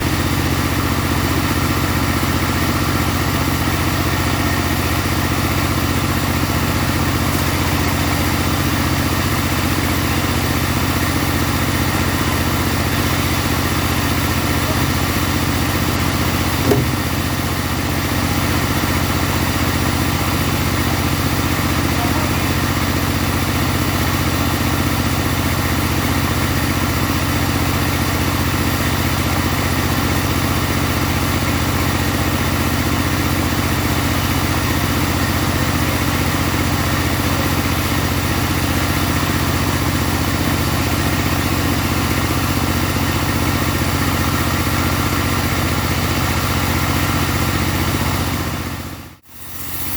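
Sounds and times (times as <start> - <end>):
sawmill engine and saw drone: 0.0 - 49.9.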